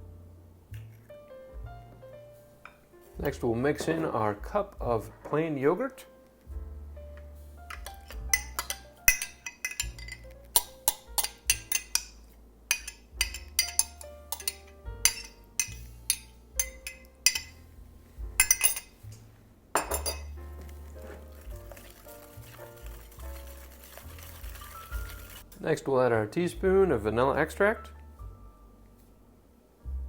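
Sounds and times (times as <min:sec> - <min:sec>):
background music with bass: 0:00.0 - 0:02.5, 0:03.1 - 0:05.4, 0:06.5 - 0:30.0
utensil clinking against bowl: 0:07.7 - 0:17.6, 0:18.4 - 0:19.1, 0:19.8 - 0:20.4.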